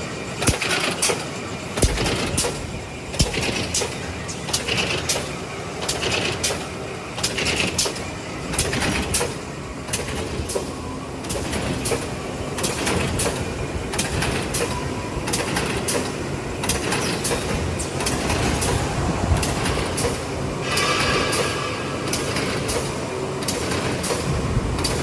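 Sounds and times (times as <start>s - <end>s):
sharp machine clacks: 0.4s - 18.8s, 19.4s - 25.0s
machine rumbling: 12.6s - 25.0s.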